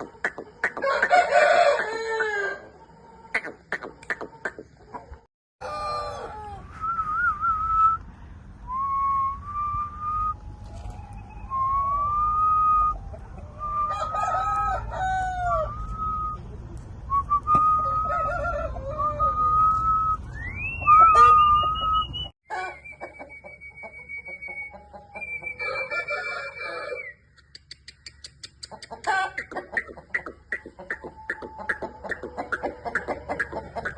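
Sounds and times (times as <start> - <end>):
roosters crowing: 0.0 - 4.6, 5.6 - 7.2, 10.3 - 16.4, 17.7 - 19.9, 24.5 - 27.3.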